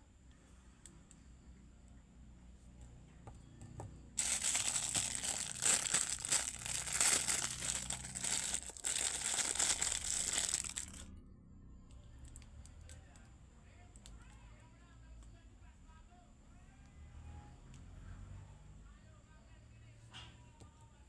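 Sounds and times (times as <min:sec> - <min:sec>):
packaging crinkling and tearing: 0:04.2 - 0:11.1.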